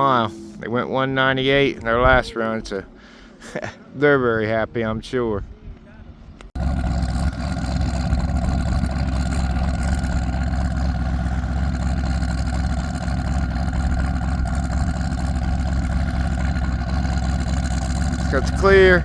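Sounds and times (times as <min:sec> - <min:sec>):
race car engine idling: 0:06.6 - 0:19.0.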